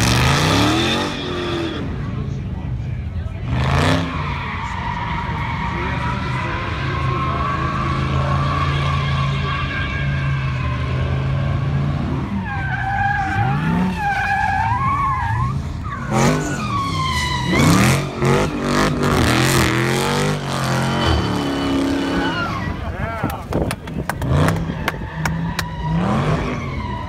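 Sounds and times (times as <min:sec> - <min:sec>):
car engine revving: 0:00.0 - 0:27.0
tyres squealing: 0:12.3 - 0:22.9.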